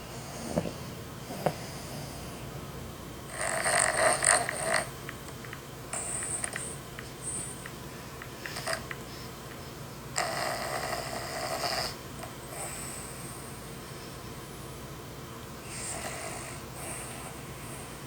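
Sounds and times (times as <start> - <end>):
person snoring: 3.3 - 4.9, 10.2 - 12.0.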